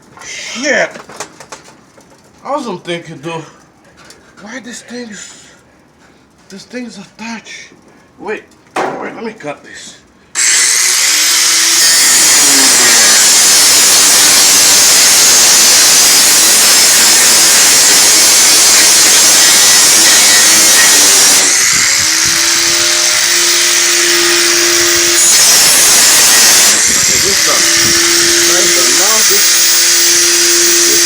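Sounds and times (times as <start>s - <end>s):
power tool grinding metal: 10.4s - 31.0s.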